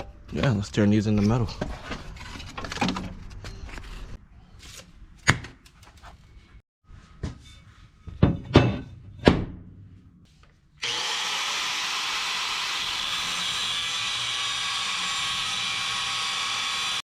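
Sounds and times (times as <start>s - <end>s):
hissing power tool on steel: 10.8s - 17.0s.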